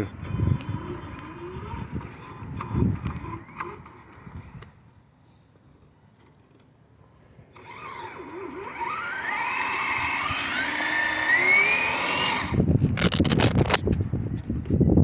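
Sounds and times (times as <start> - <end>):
electric motor whining: 0.0 - 4.7, 7.6 - 13.9.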